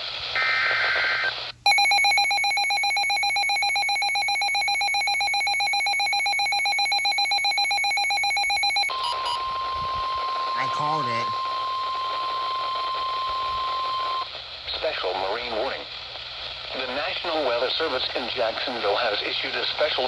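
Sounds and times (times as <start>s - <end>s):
rapid trilling alert alarm: 1.7s - 9.4s.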